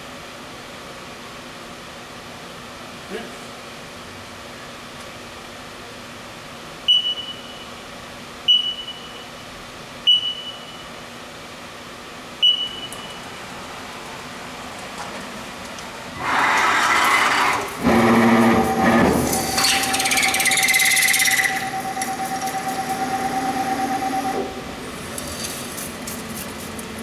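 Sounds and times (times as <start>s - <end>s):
mill humming: 12.4s - 27.0s
loud machining noise: 13.4s - 27.0s.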